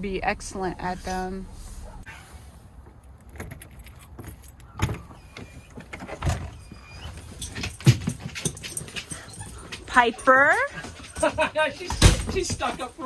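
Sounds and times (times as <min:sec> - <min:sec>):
dog collar tags jingling: 0:03.0 - 0:13.0.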